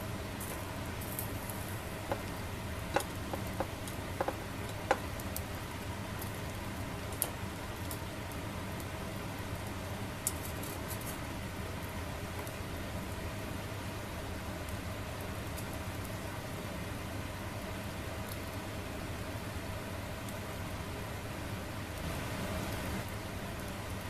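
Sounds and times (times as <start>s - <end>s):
squid sizzling on a grill: 0.0s - 24.0s
sharp pops and ticks: 2.0s - 5.4s.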